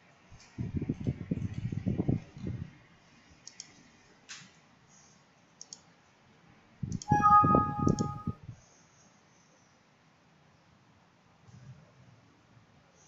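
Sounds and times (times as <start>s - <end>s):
computer mouse clicks: 3.4s - 4.4s, 5.6s - 5.9s
brief multi-pitch tone: 7.1s - 8.4s.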